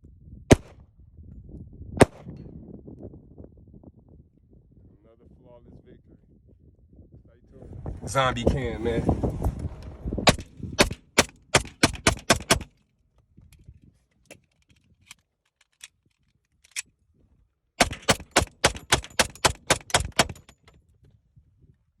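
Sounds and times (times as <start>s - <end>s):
pistol shots: 0.5s - 0.7s, 2.0s - 2.4s, 10.3s - 12.7s, 17.8s - 20.5s.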